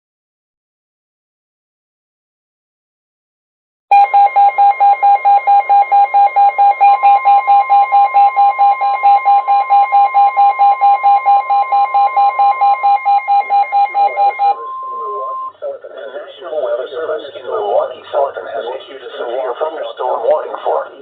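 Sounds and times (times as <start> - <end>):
rapid alarm beeping: 3.9 - 15.7
steady high tone: 11.2 - 18.7.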